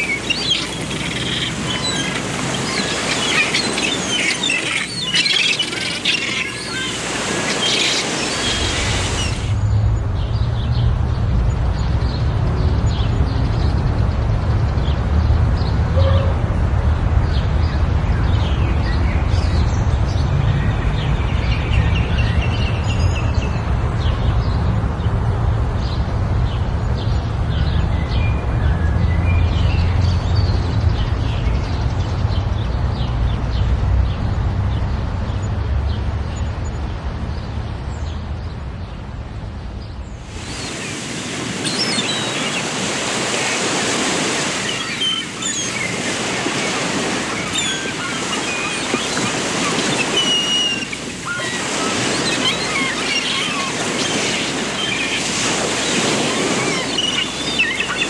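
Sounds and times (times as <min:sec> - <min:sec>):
birds chirping: 0:00.0 - 0:09.6, 0:40.2 - 0:58.0
rushing background noise: 0:00.0 - 0:17.2, 0:31.8 - 0:58.0.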